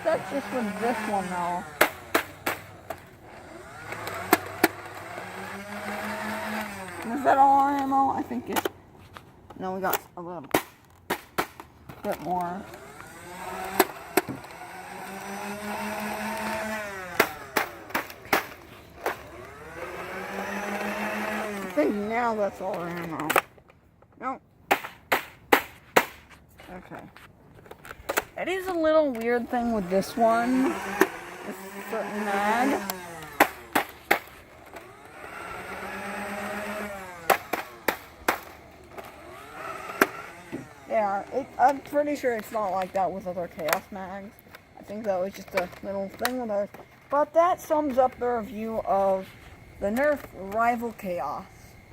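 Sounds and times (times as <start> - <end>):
sharp firing cracks: 0.0 - 3.1, 12.9 - 22.5, 24.6 - 26.3, 29.2 - 42.9
toy blaster motors whining: 0.0 - 8.7, 12.0 - 23.5, 27.8 - 51.9.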